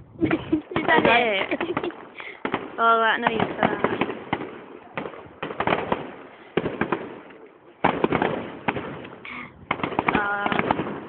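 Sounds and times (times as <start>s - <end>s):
fireworks bangs and crackling: 0.2s - 11.0s.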